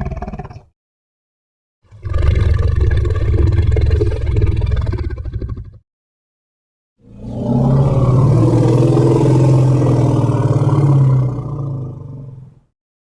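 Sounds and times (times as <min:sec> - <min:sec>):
long low-pitched roar: 0:01.9 - 0:05.8, 0:07.0 - 0:12.7.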